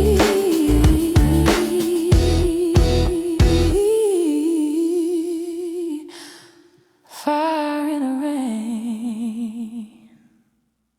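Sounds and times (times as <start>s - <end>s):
band beat: 0.0s - 3.8s
woman singing held notes: 0.0s - 4.4s.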